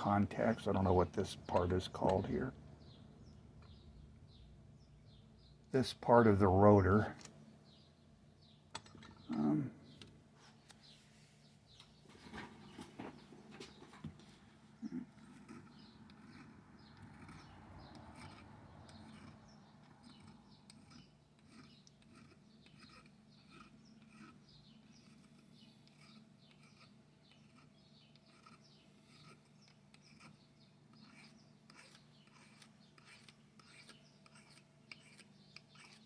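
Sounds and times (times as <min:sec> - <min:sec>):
file scraping metal: 0:14.8 - 0:36.0.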